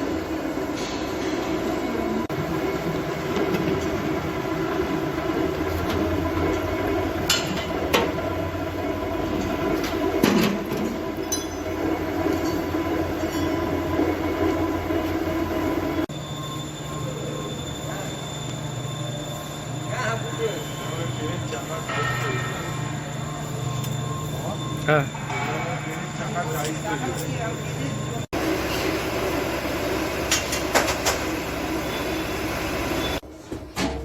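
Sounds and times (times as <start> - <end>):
train machinery droning: 0.0 - 34.0.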